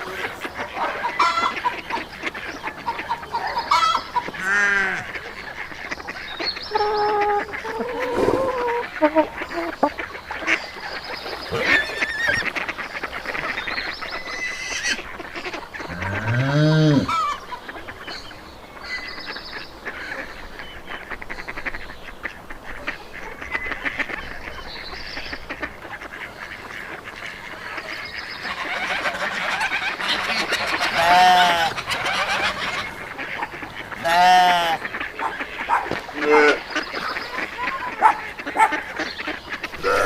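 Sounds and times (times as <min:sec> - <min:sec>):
geese honking: 0:00.0 - 0:40.0
deep loud goose call: 0:06.7 - 0:09.9, 0:15.8 - 0:17.4, 0:28.6 - 0:36.8, 0:39.7 - 0:40.0.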